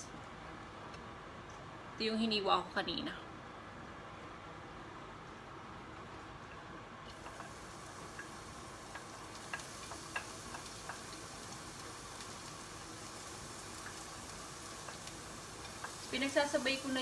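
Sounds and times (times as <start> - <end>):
garlic and onion sizzling in oil: 7.1 - 17.0.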